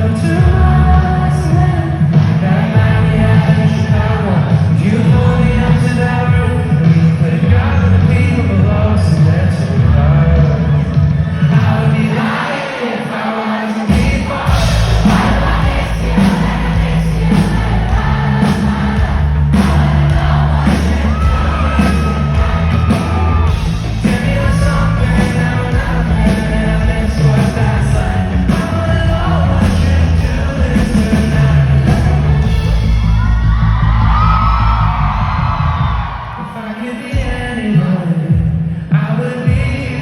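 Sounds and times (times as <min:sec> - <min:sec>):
crowd whooping and yelling: 0:11.3 - 0:29.6, 0:30.4 - 0:37.1
live rock band playing: 0:13.9 - 0:34.2.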